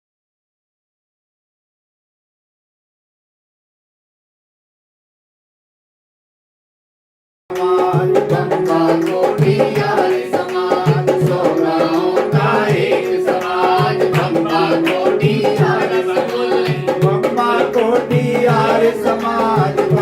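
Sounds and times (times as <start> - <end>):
sustained melody: 7.5 - 20.0
tabla playing a rhythm: 7.5 - 20.0.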